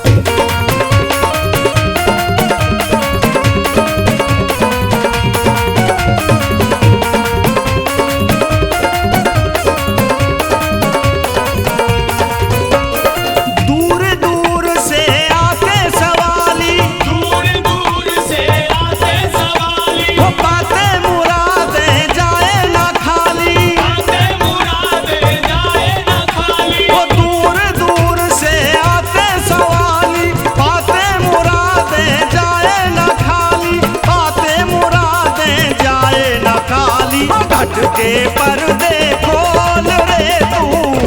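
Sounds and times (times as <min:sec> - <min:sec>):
wavering melodic lead: 0:00.0 - 0:15.2
busy drum beat: 0:00.0 - 0:41.0.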